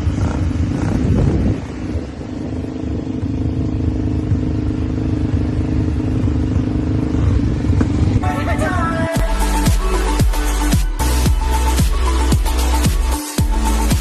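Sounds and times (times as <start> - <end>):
quad bike engine running: 0.0 - 14.0.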